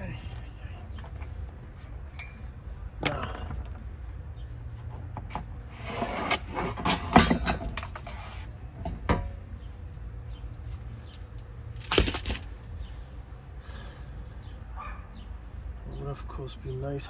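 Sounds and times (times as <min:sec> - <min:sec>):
steady low hum: 0:00.0 - 0:17.0
rustling and scraping: 0:04.8 - 0:09.5, 0:10.5 - 0:13.2.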